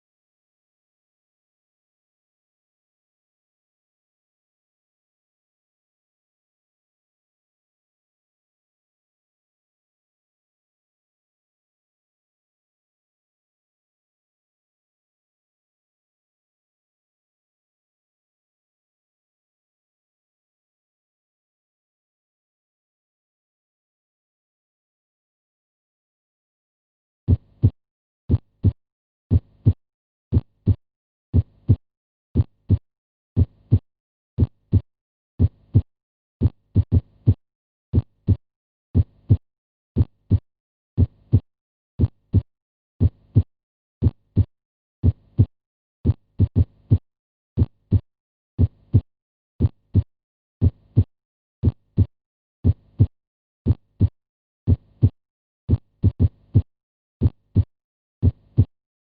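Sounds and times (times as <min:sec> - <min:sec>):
extra heart click: 0:27.3 - 0:31.8, 0:32.4 - 0:32.8, 0:33.4 - 0:33.8, 0:34.4 - 0:34.8, 0:35.4 - 0:38.4, 0:39.0 - 0:39.4, 0:40.0 - 0:40.4, 0:41.0 - 0:41.4, 0:42.0 - 0:47.0, 0:47.6 - 0:48.0, 0:48.6 - 0:58.7
heartbeat through stethoscope: 0:27.3 - 0:31.8, 0:32.4 - 0:32.8, 0:33.4 - 0:33.8, 0:34.4 - 0:38.4, 0:39.0 - 0:39.4, 0:40.0 - 0:40.4, 0:41.0 - 0:47.0, 0:47.6 - 0:58.7.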